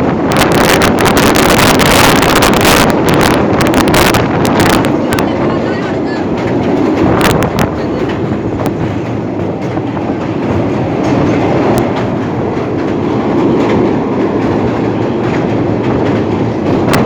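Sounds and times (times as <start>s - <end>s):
train wheels rumbling on rails: 0.0s - 17.0s.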